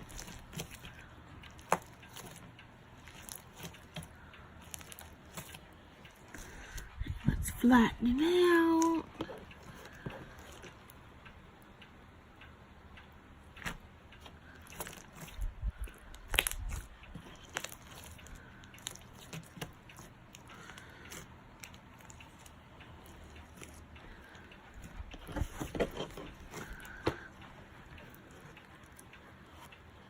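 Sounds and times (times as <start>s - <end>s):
slime crunching and clicking: 0.0s - 6.9s, 9.2s - 10.8s, 13.6s - 27.3s.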